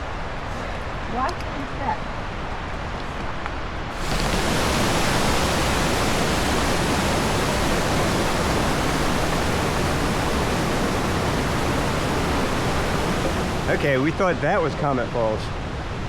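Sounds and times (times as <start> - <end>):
waterfall roaring: 3.9 - 15.0.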